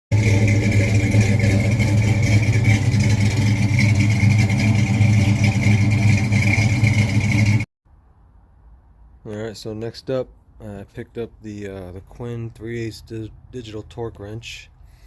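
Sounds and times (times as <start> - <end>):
vehicle engine running: 0.1 - 7.7.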